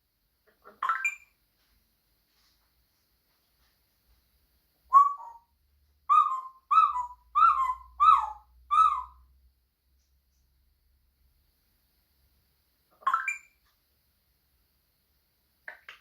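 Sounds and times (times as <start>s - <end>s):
parrot calling: 0.6s - 1.3s, 4.9s - 5.5s, 6.1s - 9.3s, 12.9s - 13.6s.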